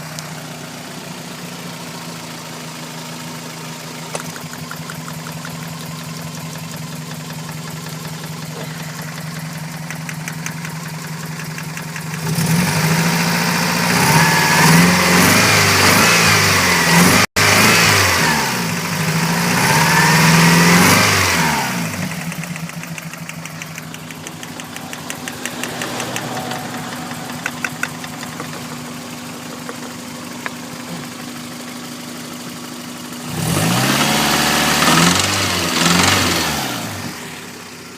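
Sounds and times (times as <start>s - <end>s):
car engine idling with rattle: 0.0s - 14.2s, 21.2s - 33.4s, 34.2s - 37.9s
engine revving: 4.1s - 32.0s, 33.1s - 37.6s.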